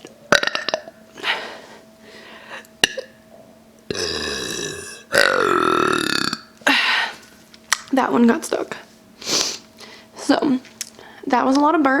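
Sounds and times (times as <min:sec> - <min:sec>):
woman burping: 0:00.3 - 0:00.9, 0:03.9 - 0:06.8.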